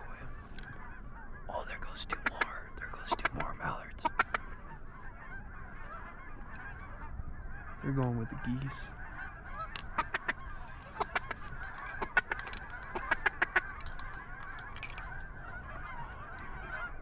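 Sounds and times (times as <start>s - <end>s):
geese honking: 0.0s - 17.0s.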